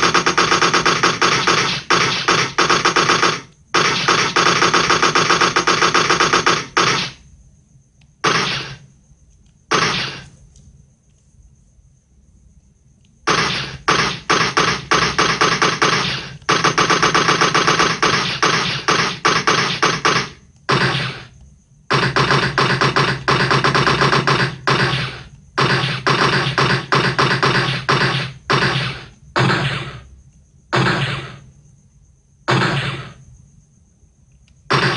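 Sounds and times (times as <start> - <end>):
automatic gunfire: 0.0 - 7.2, 8.2 - 8.8, 9.7 - 10.3, 13.3 - 21.3, 21.9 - 30.0, 34.7 - 34.9.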